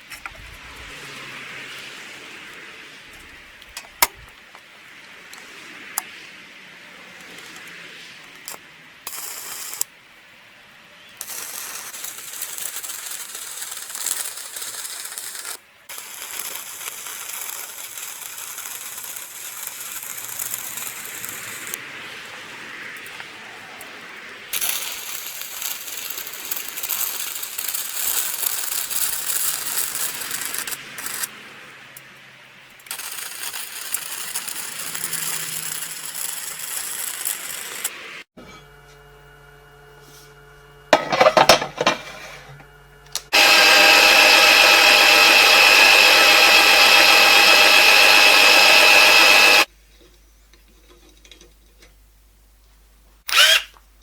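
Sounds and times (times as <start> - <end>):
harsh crackling hiss: 11.2 - 21.8, 24.5 - 31.3.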